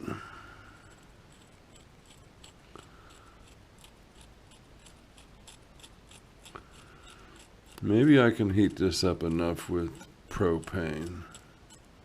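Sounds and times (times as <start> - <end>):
scraping strokes on metal: 0.8 - 12.0.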